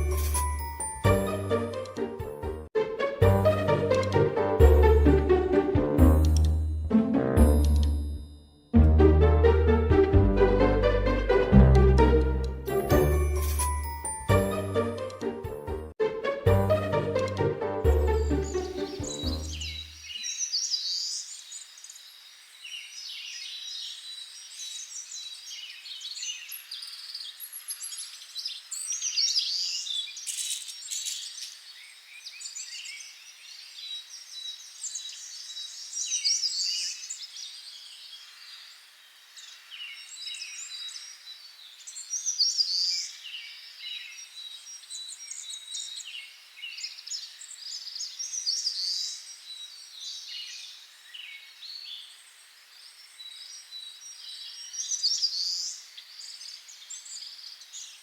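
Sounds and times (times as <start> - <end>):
birds chirping and calling: 18.3 - 21.3.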